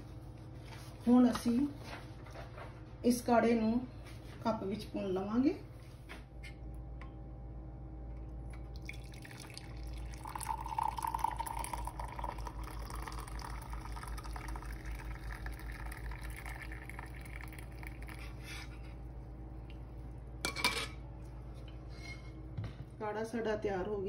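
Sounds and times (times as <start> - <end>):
liquid pouring into a cup: 8.3 - 20.1.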